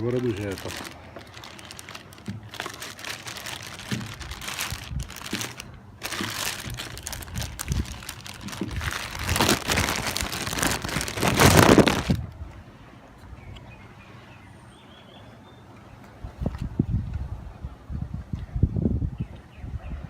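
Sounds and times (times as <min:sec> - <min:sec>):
packaging rustling and crinkling: 0:00.0 - 0:12.3.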